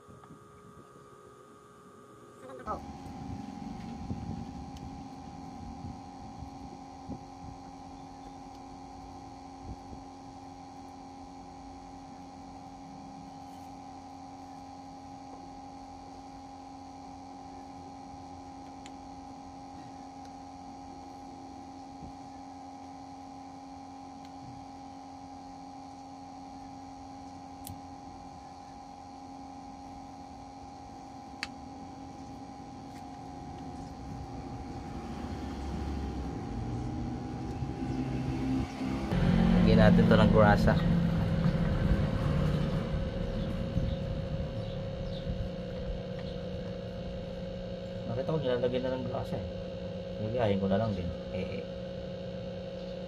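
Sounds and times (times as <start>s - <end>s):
two-tone hum: 0.0s - 53.0s
rough rumbling noise: 2.7s - 8.0s, 31.7s - 51.5s.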